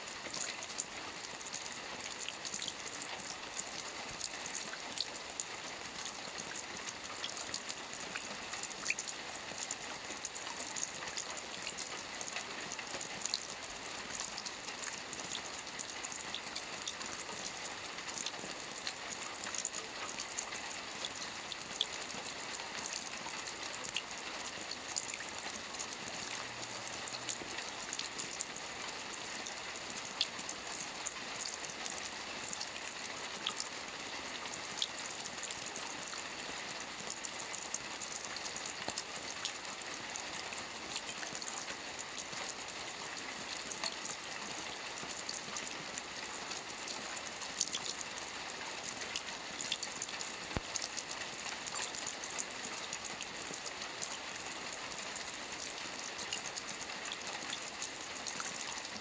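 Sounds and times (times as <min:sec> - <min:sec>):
steady rain hiss: 0:00.0 - 0:59.0
raindrops pattering: 0:00.1 - 0:59.0.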